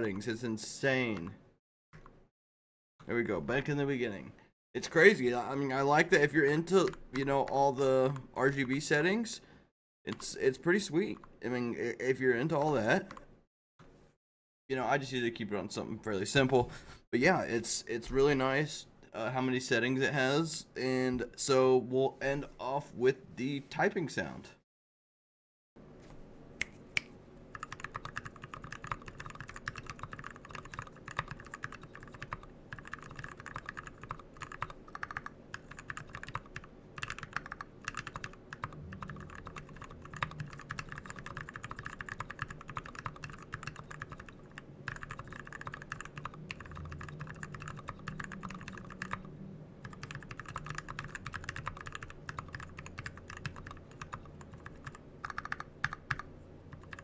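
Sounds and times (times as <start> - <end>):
fast typing on mechanical keyboard: 27.5 - 57.0.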